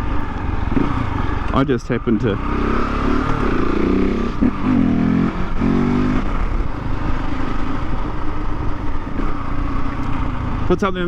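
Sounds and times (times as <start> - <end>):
motorcycle engine revving and idling: 0.0 - 11.0.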